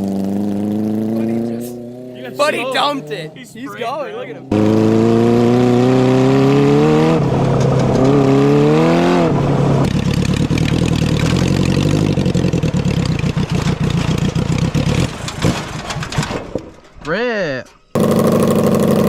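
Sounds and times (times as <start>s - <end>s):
lawnmower engine accelerating: 18.0s - 19.0s.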